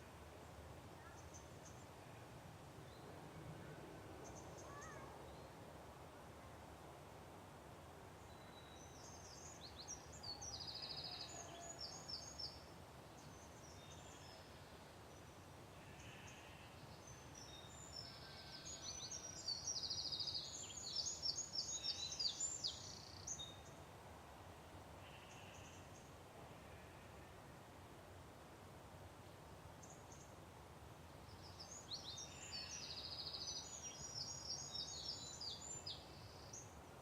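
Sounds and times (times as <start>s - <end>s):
faint background hiss: 0.0s - 37.0s
songbird chirping and trilling: 16.0s - 23.8s, 31.3s - 36.8s.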